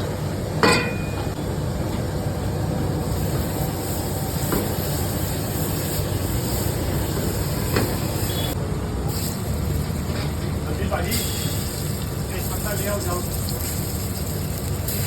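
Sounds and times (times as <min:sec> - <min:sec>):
food sizzling in a pan: 0:03.0 - 0:08.5, 0:11.0 - 0:15.0.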